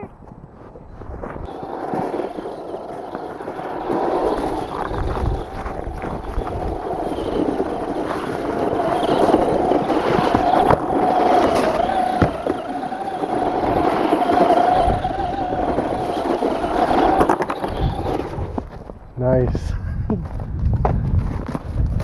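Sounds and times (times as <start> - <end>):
electric motor whining: 1.5 - 18.9.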